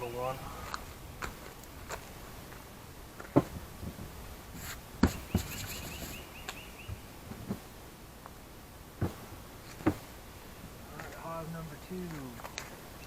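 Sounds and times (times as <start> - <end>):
wooden frames knocking: 3.2 - 4.1, 5.0 - 6.0, 9.0 - 10.1.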